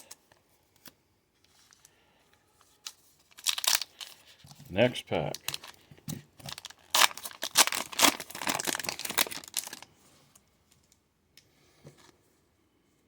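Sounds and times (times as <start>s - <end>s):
foil wrapper tearing and crinkling: 3.3s - 4.3s, 5.3s - 5.8s, 6.4s - 9.9s.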